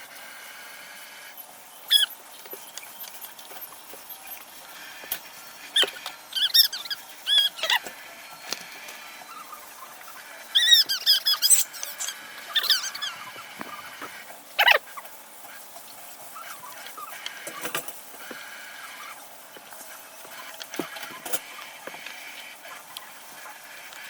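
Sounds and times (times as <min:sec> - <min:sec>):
baby squealing: 0:01.9 - 0:02.1, 0:05.8 - 0:07.8, 0:10.6 - 0:13.4, 0:14.6 - 0:14.8.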